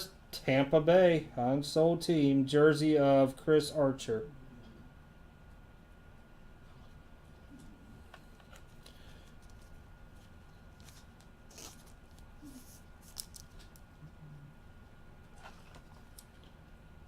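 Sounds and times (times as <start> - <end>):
trading cards rustling and clicking: 7.6 - 13.9.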